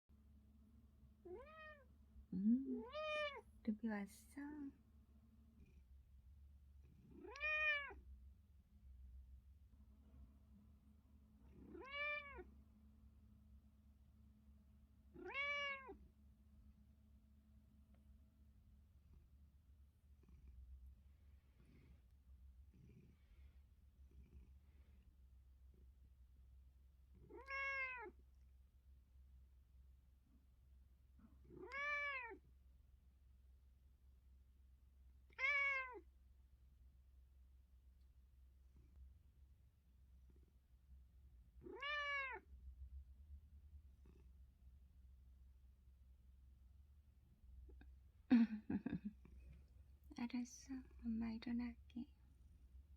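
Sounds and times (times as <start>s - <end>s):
cat meowing: 1.3s - 1.9s, 2.8s - 3.4s, 7.2s - 8.0s, 11.7s - 12.5s, 15.2s - 16.0s, 27.3s - 28.2s, 31.5s - 32.4s, 35.3s - 36.0s, 41.6s - 42.5s.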